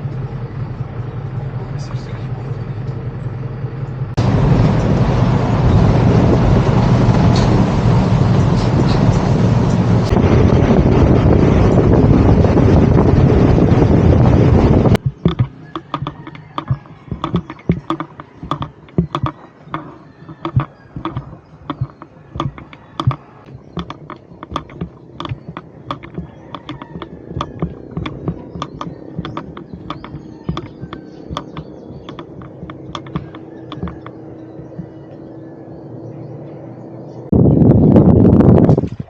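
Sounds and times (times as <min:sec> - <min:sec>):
small clicks and knocks: 0:15.0 - 0:35.0.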